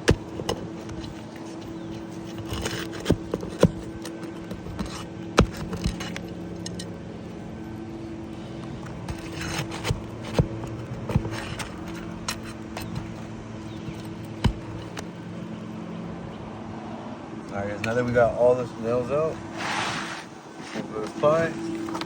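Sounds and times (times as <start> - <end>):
metal knocks and scrapes: 0.0 - 7.0, 8.4 - 15.2
steady low hum: 0.0 - 22.0.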